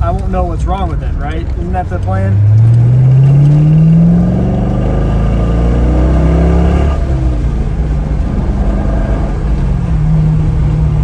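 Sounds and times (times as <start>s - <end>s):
car engine accelerating hard: 0.0s - 11.0s
exhaust rattling metallically: 0.0s - 11.0s.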